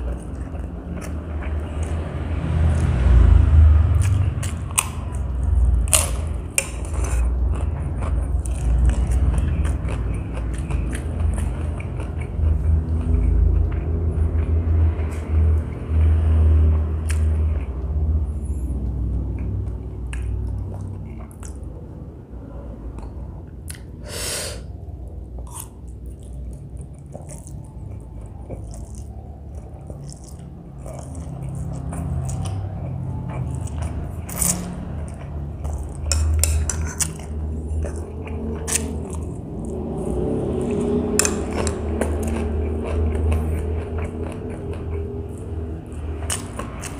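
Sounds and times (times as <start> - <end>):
person chewing noodles: 0.0 - 22.2, 22.9 - 46.9
wet mouth clicks and smacks: 23.0 - 23.9.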